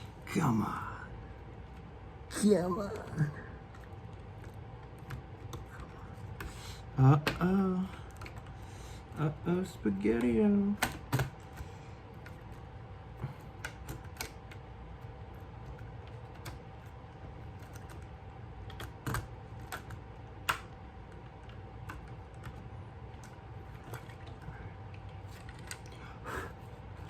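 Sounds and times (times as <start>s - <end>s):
faint steady hum: 0.0s - 27.0s
small parts clicking and tapping: 17.5s - 26.0s.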